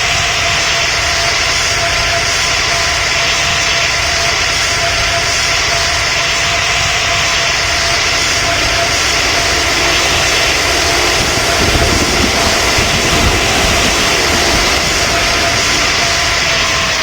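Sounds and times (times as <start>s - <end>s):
airplane engines roaring: 0.0s - 17.0s
deep rumble: 5.2s - 17.0s.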